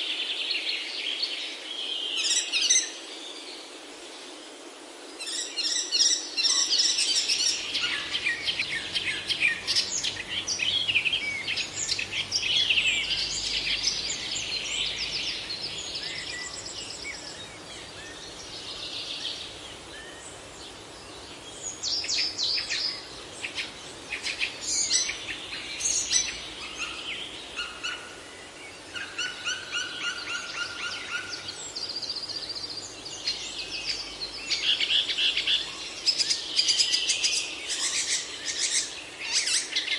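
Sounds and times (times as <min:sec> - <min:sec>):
faint steady hiss: 0:00.0 - 0:39.9
songbirds singing and chirping: 0:00.0 - 0:39.9.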